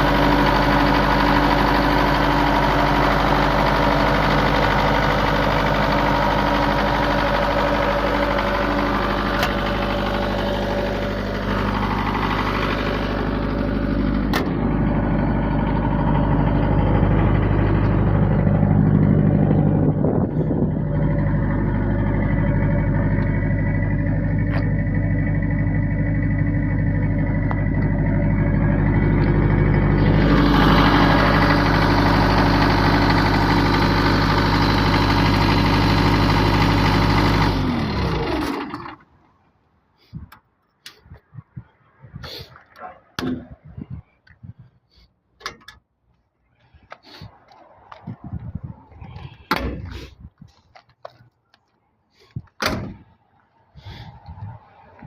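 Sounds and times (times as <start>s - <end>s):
generator diesel engine running: 0.0s - 39.2s.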